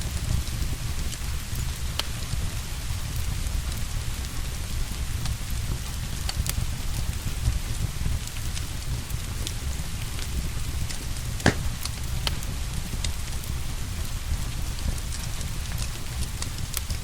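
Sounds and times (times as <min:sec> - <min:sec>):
steady rain: 0:00.0 - 0:10.8, 0:12.4 - 0:17.0
wood fire crackling: 0:09.5 - 0:12.4.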